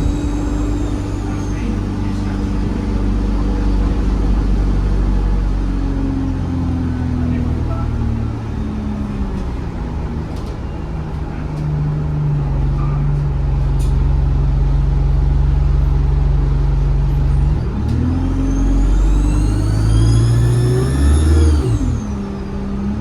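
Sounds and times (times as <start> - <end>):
bus engine running under load: 0.0 - 23.0
turbo whistle: 18.6 - 22.0.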